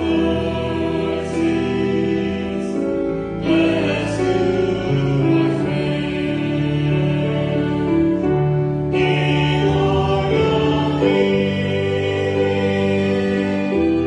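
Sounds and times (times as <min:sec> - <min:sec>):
slow church music: 0:00.0 - 0:14.0.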